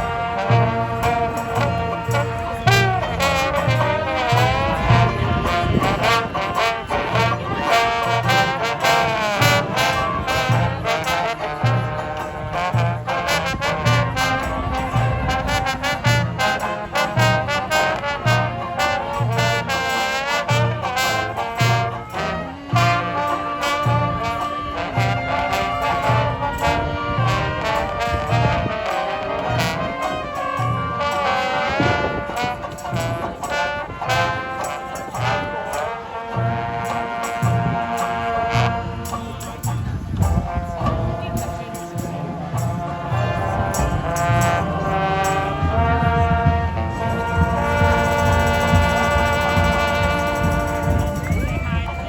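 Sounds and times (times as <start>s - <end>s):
brass band playing: 0.0s - 52.0s
drums: 36.3s - 52.0s.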